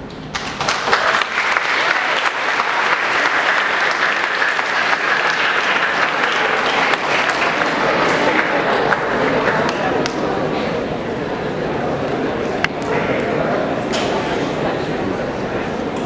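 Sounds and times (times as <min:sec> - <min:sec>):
large audience applauding: 0:00.3 - 0:10.4.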